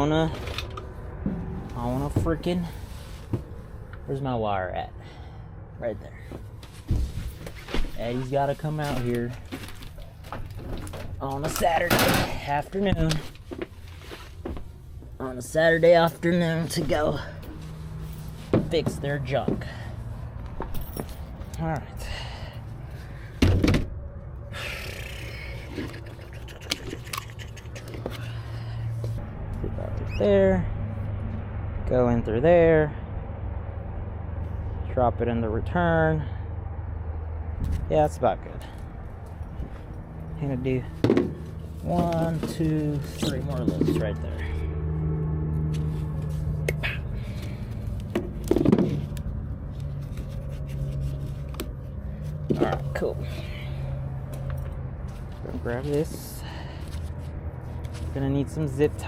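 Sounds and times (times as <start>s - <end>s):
steady low hum: 0.0s - 59.0s
rustling: 13.2s - 15.2s.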